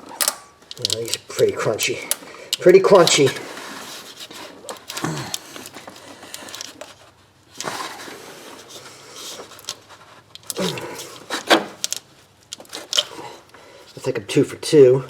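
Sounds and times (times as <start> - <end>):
plastic connector clicking and cracking: 0.2 - 3.2.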